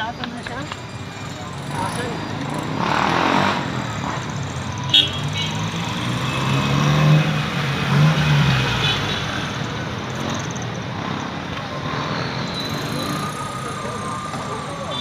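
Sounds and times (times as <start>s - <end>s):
street traffic: 0.0s - 15.0s
vehicle engine running close by: 9.5s - 15.0s.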